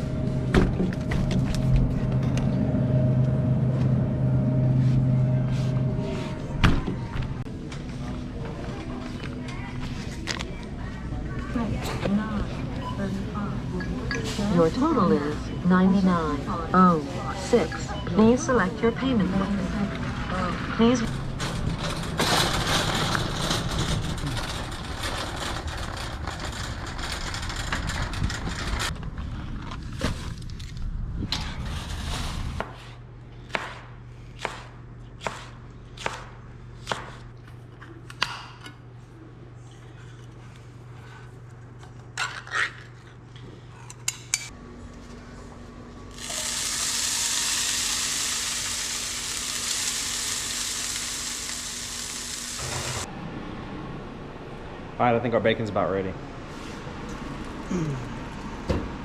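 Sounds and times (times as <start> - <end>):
loud noise: 20.4 - 28.9
kitchen utensils and dishes clattering: 21.0 - 28.9
bacon sizzling: 46.2 - 52.6.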